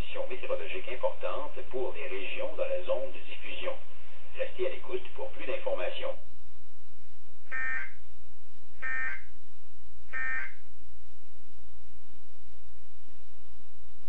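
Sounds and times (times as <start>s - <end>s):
steady low hum: 0.0s - 14.0s
shrill electronic data tones: 7.5s - 8.0s, 8.8s - 9.3s, 10.1s - 10.6s.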